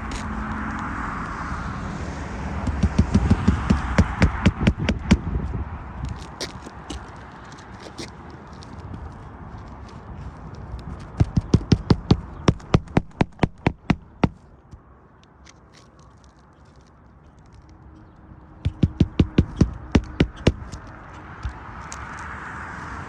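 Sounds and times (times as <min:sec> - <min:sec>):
hammer blows on shingle roof: 0:02.6 - 0:05.4, 0:11.1 - 0:14.8, 0:18.6 - 0:21.6.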